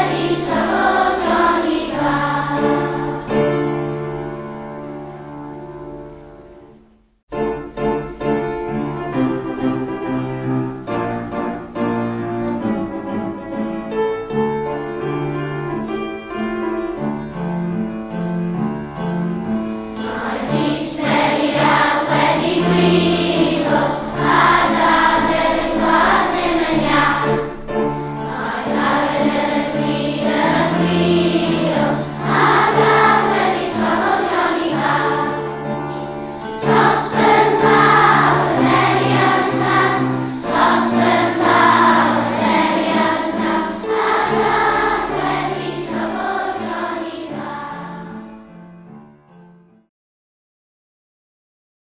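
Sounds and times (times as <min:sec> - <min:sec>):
choir singing: 0:00.0 - 0:04.5, 0:19.9 - 0:48.3
piano: 0:00.0 - 0:49.9.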